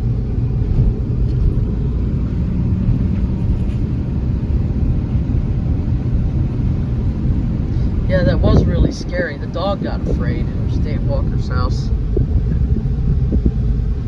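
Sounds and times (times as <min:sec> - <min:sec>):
car driving on road: 0:00.0 - 0:14.0.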